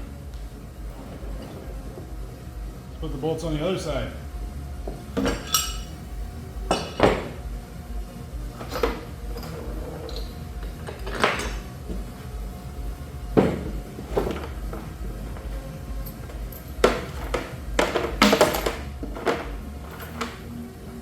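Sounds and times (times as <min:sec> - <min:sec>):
metal bolts clinking on housing: 0:05.2 - 0:06.0.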